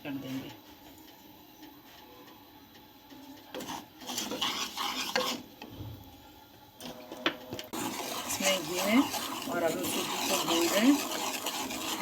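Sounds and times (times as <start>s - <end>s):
spoon scraping in a pan: 3.5s - 5.7s, 7.7s - 12.0s.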